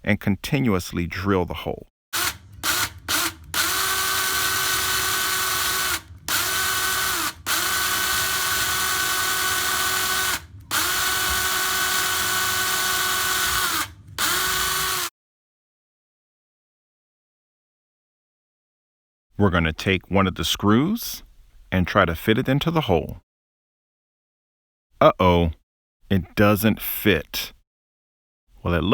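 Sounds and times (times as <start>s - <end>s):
electric drill drilling into wood: 2.2s - 15.1s.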